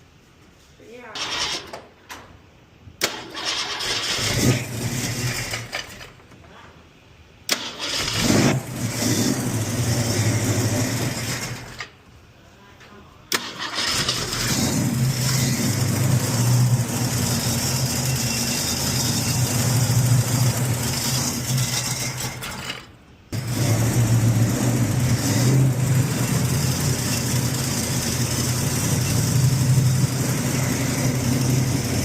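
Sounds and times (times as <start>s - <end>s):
car engine idling: 13.5s - 22.4s, 23.4s - 32.0s.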